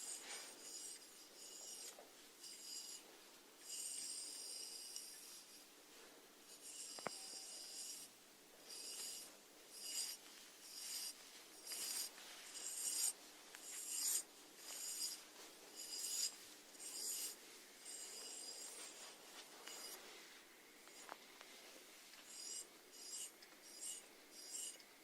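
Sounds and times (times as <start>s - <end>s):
snail radula rasping: 0.0s - 3.0s, 6.5s - 8.1s, 8.7s - 15.2s, 15.8s - 19.0s, 22.2s - 24.8s.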